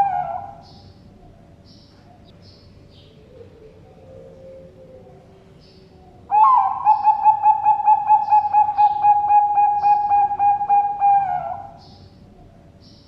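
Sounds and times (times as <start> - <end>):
dove rapid cooing: 6.1 - 11.8.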